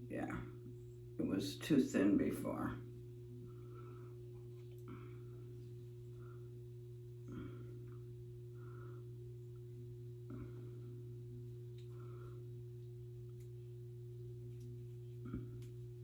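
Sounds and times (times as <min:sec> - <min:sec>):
low hum: 0:00.0 - 0:16.0
soft handling sounds: 0:11.1 - 0:16.0.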